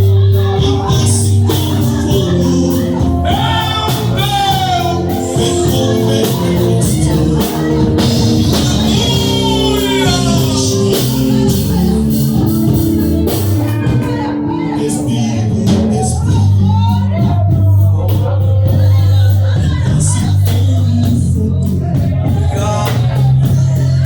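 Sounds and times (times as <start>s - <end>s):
drums: 0.0s - 24.0s
person singing: 0.0s - 24.0s.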